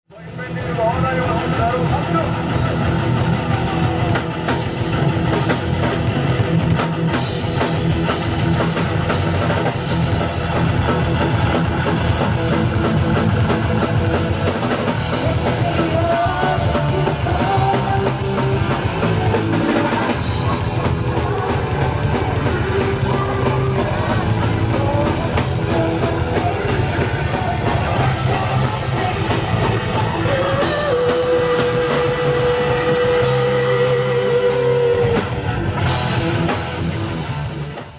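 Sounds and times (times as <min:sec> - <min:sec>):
bass guitar: 0:00.0 - 0:37.9
drum kit: 0:00.1 - 0:37.9
electric guitars: 0:00.1 - 0:37.9.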